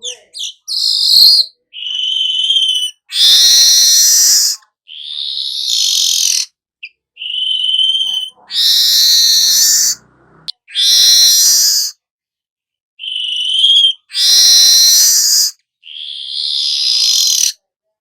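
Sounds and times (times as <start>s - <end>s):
bird whistled notes: 0.4s - 6.5s, 7.2s - 12.0s, 13.0s - 17.6s.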